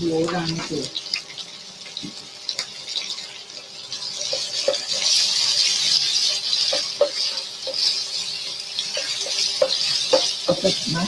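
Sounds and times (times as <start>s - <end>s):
food sizzling in hot oil: 0.0s - 11.0s
spatula knocking against pan: 8.9s - 10.4s.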